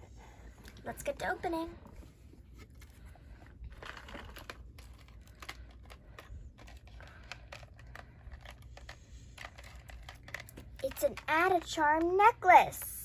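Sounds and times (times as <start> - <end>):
packaging crinkling and rustling: 2.4 - 11.3.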